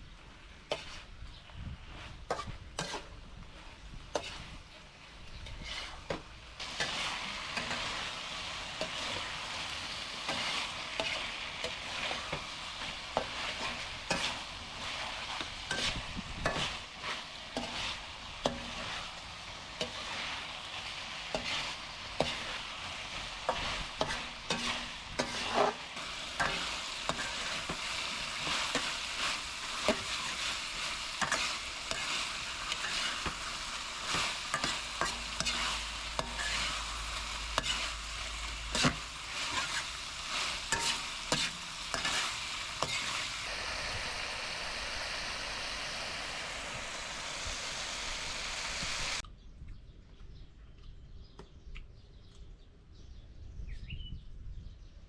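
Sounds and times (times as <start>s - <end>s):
utensil clicking and scraping pan: 0.7s - 1.1s, 2.3s - 3.1s, 4.1s - 4.4s, 15.3s - 19.0s, 23.4s - 25.8s, 26.4s - 30.6s, 31.2s - 33.4s, 34.0s - 36.8s, 37.5s - 38.0s, 38.6s - 43.4s
food sizzling in hot oil: 1.7s - 49.2s.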